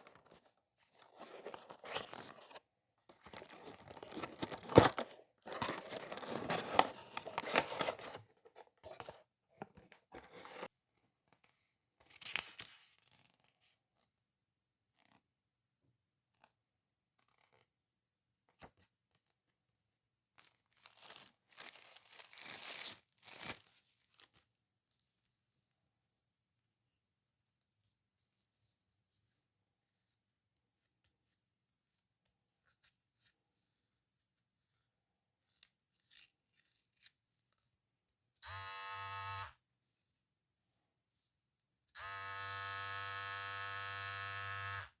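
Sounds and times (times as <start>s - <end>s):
electric hair clipper buzzing: 38.4s - 39.5s, 42.0s - 44.9s.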